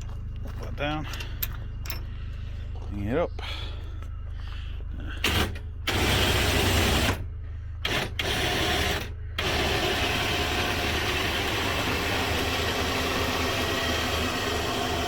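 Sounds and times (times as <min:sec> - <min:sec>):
low engine hum: 0:00.0 - 0:15.0
small electric motor running: 0:07.9 - 0:15.0.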